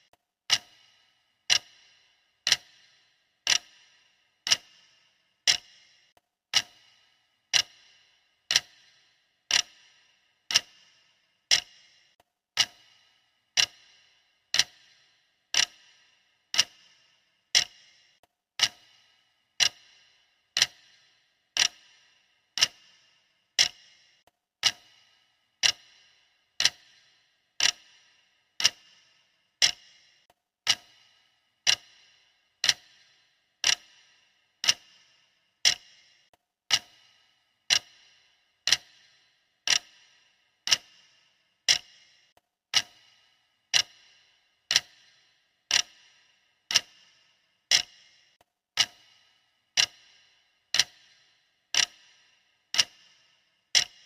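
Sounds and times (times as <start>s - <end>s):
clock ticking: 0.0s - 54.0s.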